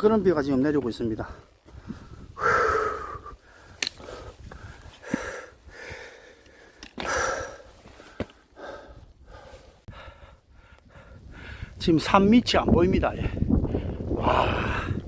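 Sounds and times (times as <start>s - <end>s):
person breathing hard: 1.7s - 11.8s, 13.7s - 15.0s.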